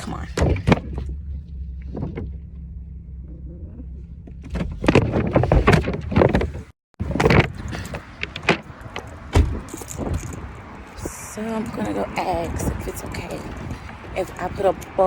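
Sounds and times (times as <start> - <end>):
car door opening and shutting: 0.0 - 10.8
low car cabin hum: 0.0 - 15.0
heavy thump: 9.3 - 10.2.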